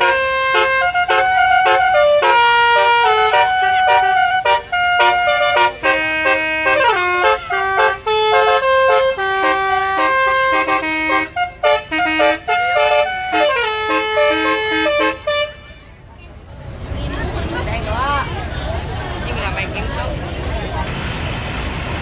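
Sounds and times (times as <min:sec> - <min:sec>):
musical air horn melody: 0:00.0 - 0:15.9.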